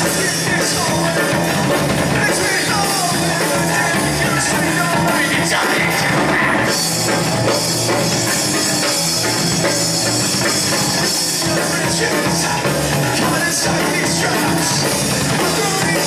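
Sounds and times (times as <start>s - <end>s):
live rock band playing: 0.0s - 16.0s.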